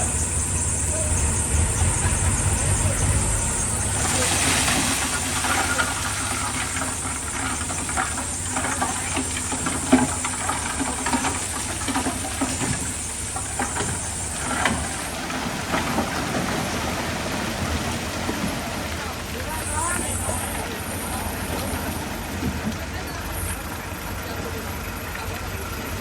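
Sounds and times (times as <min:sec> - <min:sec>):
knocks and clatters: 0:00.0 - 0:17.0
heavy machinery diesel engine: 0:00.0 - 0:26.0.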